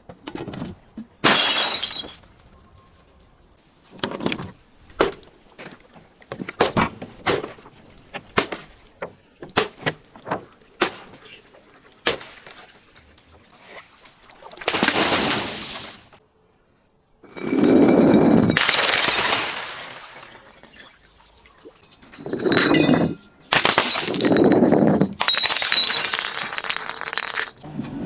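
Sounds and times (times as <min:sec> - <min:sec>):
glass crunching grind: 0:17.3 - 0:27.6.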